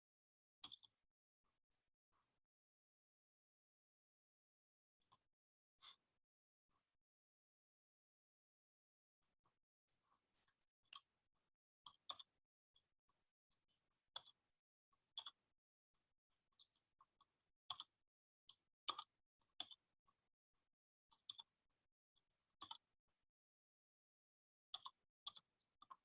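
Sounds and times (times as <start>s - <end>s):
keyboard and mouse clicks: 18.9s - 19.8s.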